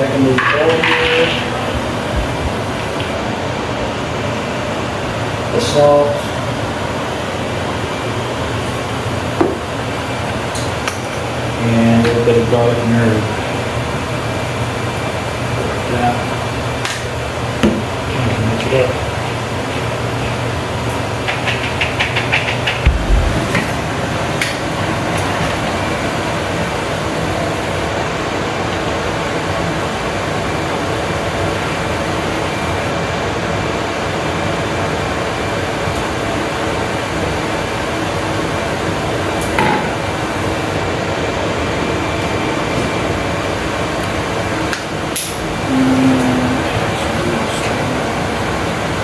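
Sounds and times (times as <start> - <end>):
sharp knocks: 21.3 - 24.6.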